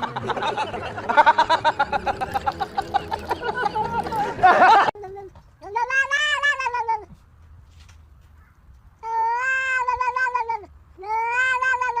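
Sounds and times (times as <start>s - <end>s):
cat meowing: 9.1s - 12.0s.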